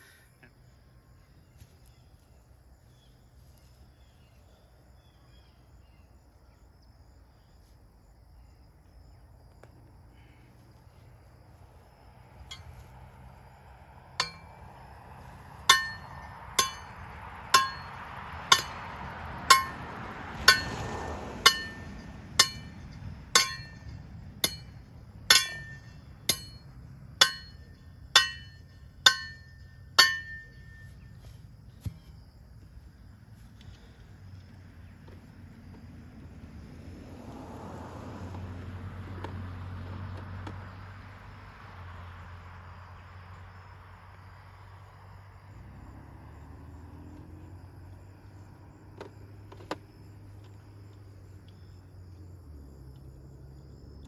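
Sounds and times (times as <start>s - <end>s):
hammer striking metal: 14.2s - 14.6s, 15.7s - 18.9s, 19.5s - 19.8s, 20.5s - 20.8s, 21.4s - 30.9s.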